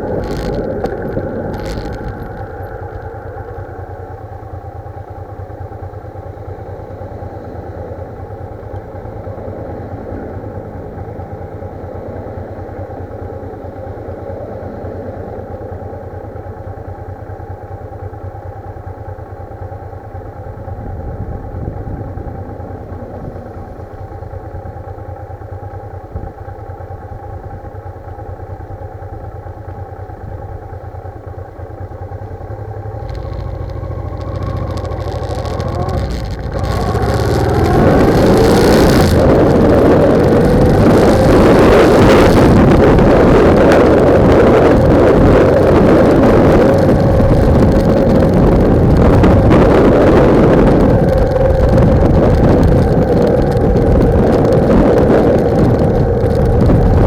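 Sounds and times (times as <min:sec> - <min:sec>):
wind buffeting microphone: 0:00.0 - 0:04.3, 0:20.4 - 0:24.9, 0:32.4 - 0:57.0
motorcycle engine running: 0:00.0 - 0:57.0.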